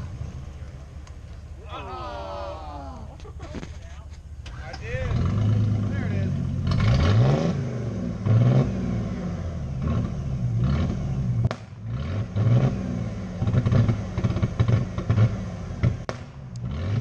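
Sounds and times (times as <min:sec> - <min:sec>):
car engine revving: 0:00.0 - 0:01.7, 0:02.6 - 0:17.0
sharp cracks: 0:11.4 - 0:11.9, 0:13.5 - 0:16.9.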